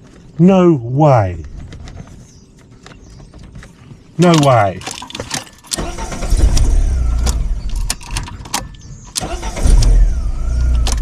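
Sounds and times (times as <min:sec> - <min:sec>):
car engine starting and running: 0:05.6 - 0:11.0.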